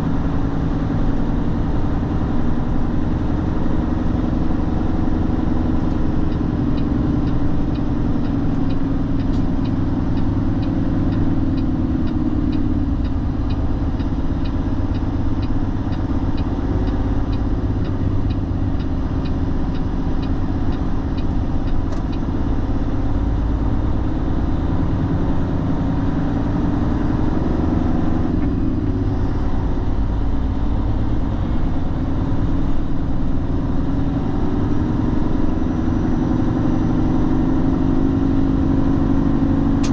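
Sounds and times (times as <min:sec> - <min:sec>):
truck engine running: 0:00.0 - 0:39.9
light even ticking: 0:05.2 - 0:23.0.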